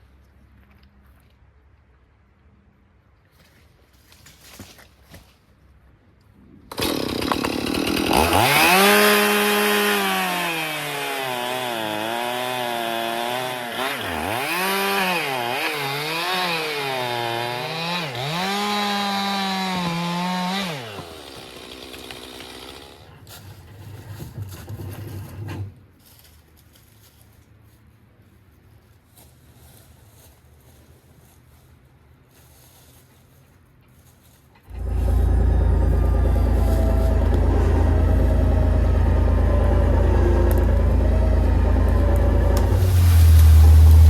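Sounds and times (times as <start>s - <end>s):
chainsaw cutting log: 6.7s - 23.3s, 34.6s - 44.0s.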